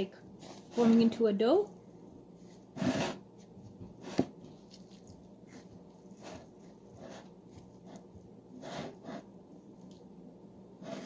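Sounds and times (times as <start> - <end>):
wet dough squishing: 4.5 - 8.1.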